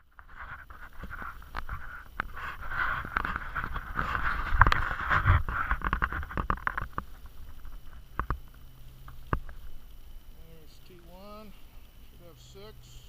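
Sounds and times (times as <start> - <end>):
muffled scraping and knocking: 0.0 - 9.8.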